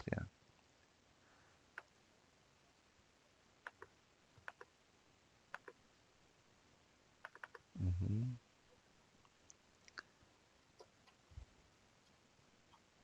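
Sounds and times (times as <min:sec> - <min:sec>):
computer mouse clicking: 0:03.6 - 0:04.7, 0:05.5 - 0:05.8, 0:07.2 - 0:07.7
person humming: 0:07.8 - 0:08.4.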